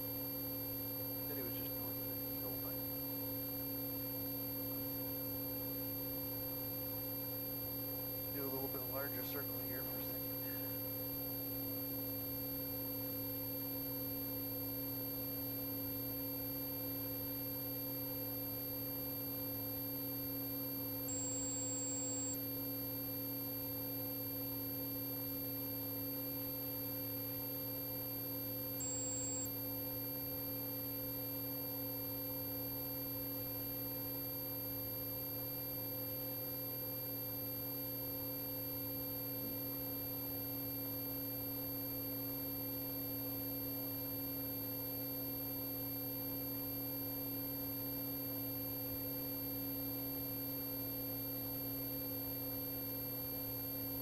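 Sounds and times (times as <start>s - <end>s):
steady electronic hum: 0.0s - 35.9s.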